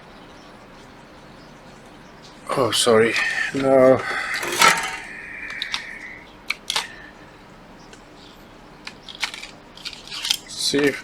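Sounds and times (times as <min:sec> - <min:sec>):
sharp clack with ringing tone: 0:04.4 - 0:05.9.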